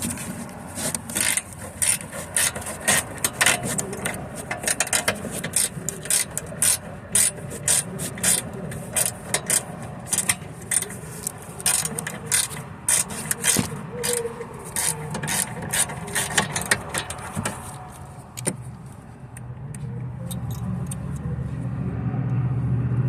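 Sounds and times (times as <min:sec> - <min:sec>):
ratchet wrench clicking: 0:00.8 - 0:18.6.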